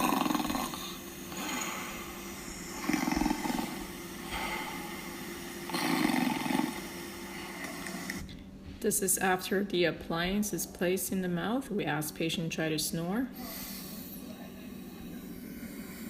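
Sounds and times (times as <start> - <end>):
quiet breathing: 0.0 - 5.3, 13.4 - 16.0
person snoring: 0.0 - 8.1, 13.4 - 16.0.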